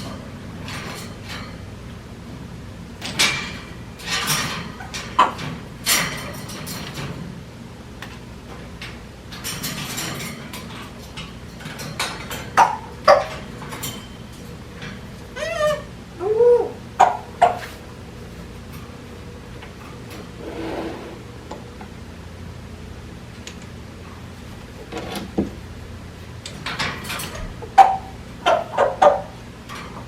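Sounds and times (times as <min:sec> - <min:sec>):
parrot call: 0:15.4 - 0:17.6.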